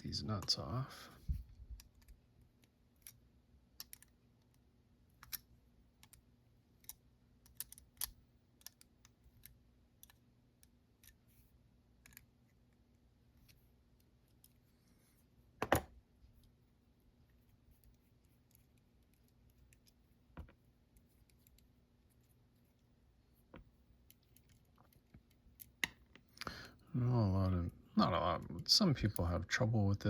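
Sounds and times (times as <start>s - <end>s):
small metallic clicks and ticks: 3.8s - 4.6s, 6.8s - 11.2s.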